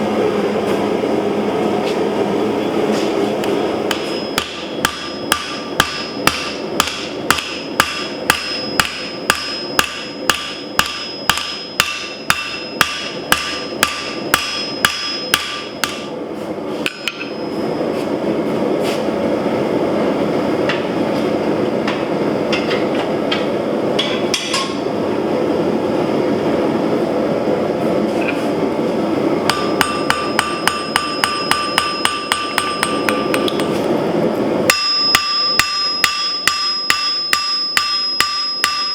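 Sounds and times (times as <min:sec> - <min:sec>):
hammer ringing on steel anvil: 0:03.9 - 0:16.1, 0:16.9 - 0:17.6, 0:29.5 - 0:33.8, 0:34.7 - 0:38.9.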